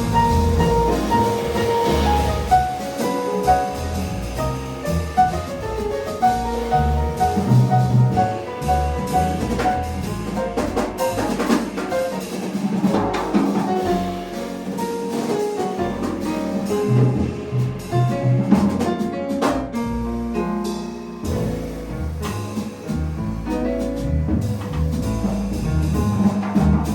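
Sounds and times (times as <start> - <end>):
bass: 0.0 - 26.9
busy drum kit: 0.0 - 26.9
piano: 0.0 - 26.9.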